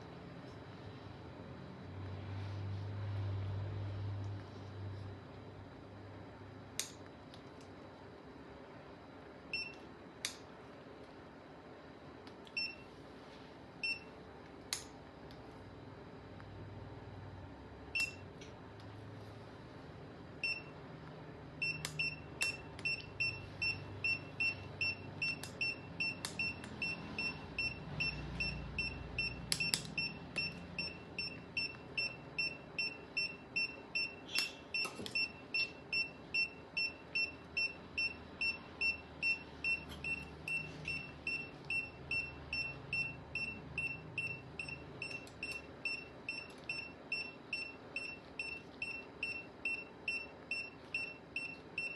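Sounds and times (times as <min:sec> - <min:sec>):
patient monitor beeping: 0:12.5 - 0:12.9, 0:13.8 - 0:14.2, 0:20.4 - 0:20.8, 0:21.6 - 0:51.9.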